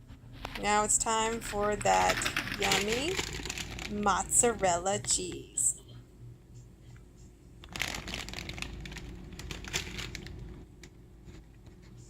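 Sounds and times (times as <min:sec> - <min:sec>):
plastic packaging crinkling: 0:00.4 - 0:05.3, 0:07.6 - 0:10.6.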